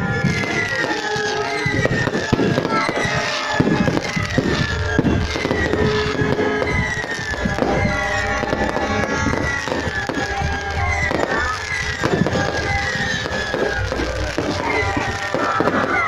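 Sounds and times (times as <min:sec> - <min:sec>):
fireworks bangs and crackles: 0:00.0 - 0:16.0
high falling whistle tone: 0:03.9 - 0:16.0.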